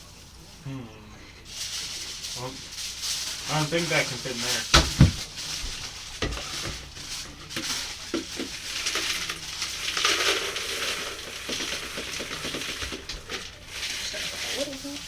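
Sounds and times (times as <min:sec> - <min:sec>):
dry cereal rustling and clattering: 0:01.4 - 0:15.0.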